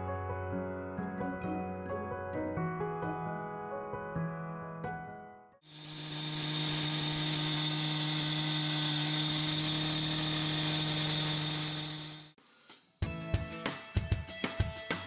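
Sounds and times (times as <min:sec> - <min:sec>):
machine humming and hissing: 0:05.7 - 0:12.4.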